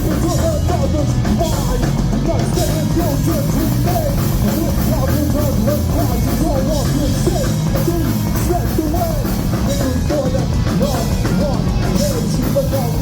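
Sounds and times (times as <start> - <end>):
loud rock music: 0.0 - 13.0.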